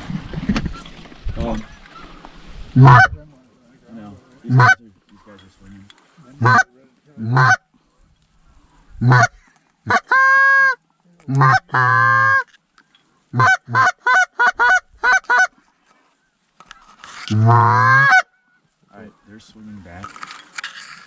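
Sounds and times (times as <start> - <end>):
goose call honks: 2.8 - 3.2, 4.5 - 4.8, 6.4 - 7.6, 9.0 - 12.5, 13.4 - 15.5, 17.3 - 18.4
goose call moans: 2.8 - 3.2, 17.3 - 18.2.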